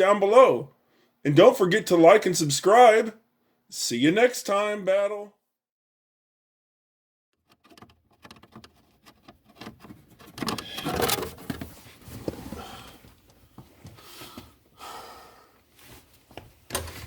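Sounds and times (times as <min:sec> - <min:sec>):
objects clicking and clattering: 0:07.4 - 0:11.7
rustling: 0:07.6 - 0:14.4.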